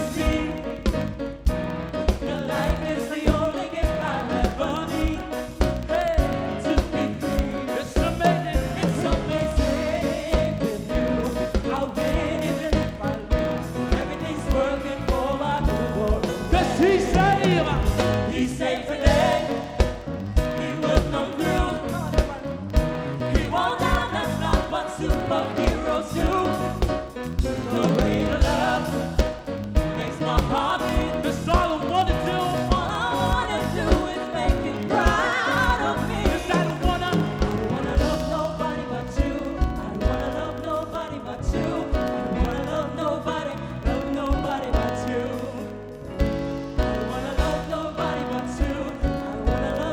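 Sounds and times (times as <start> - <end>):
steady drum beat: 0.0 - 40.4
gospel band playing: 0.0 - 49.9
voices singing sliding lines: 0.0 - 49.9.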